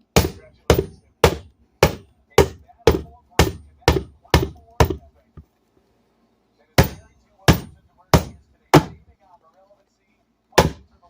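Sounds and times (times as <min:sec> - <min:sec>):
hammer striking metal appliance: 0:00.0 - 0:05.1, 0:06.8 - 0:09.0, 0:10.6 - 0:10.9.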